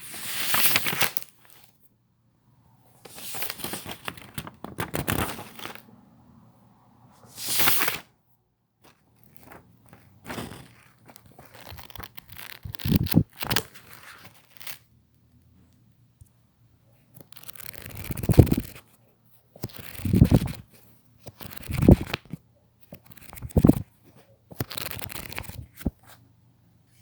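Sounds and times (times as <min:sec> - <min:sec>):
paper tearing: 0:10.2 - 0:14.8, 0:17.3 - 0:18.8, 0:19.6 - 0:20.6, 0:21.4 - 0:22.3, 0:23.0 - 0:23.8, 0:24.6 - 0:25.7.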